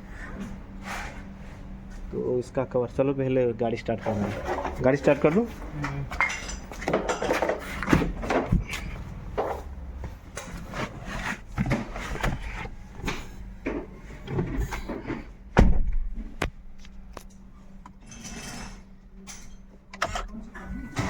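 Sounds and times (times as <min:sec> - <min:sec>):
steady low hum: 0:00.0 - 0:21.0
knocks and clatter of handling: 0:04.0 - 0:16.6.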